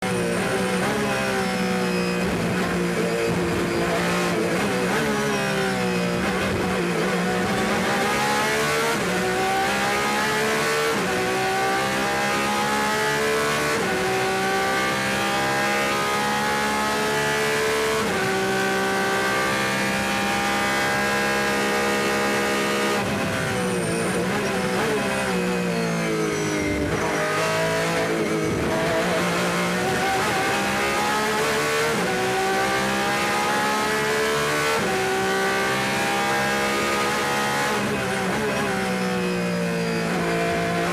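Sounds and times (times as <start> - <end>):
race car engine accelerating: 0.0 - 40.9.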